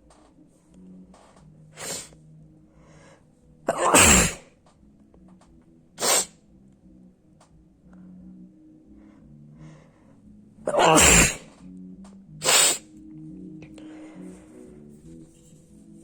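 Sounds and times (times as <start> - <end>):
person sneezing: 1.8 - 2.1, 3.7 - 4.5, 6.0 - 6.3, 10.7 - 11.5, 12.4 - 12.8.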